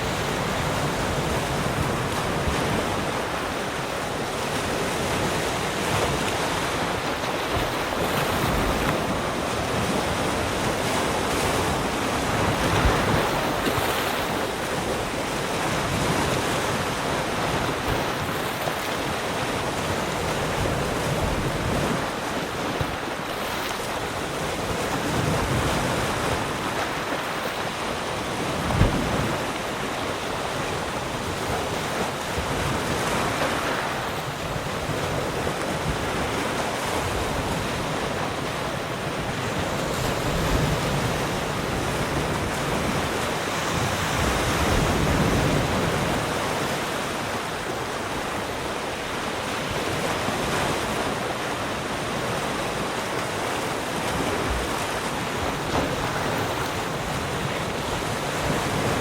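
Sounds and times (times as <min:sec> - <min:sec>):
waves breaking on shore: 0:00.0 - 0:59.0
low thump of breaking wave: 0:28.6 - 0:29.4.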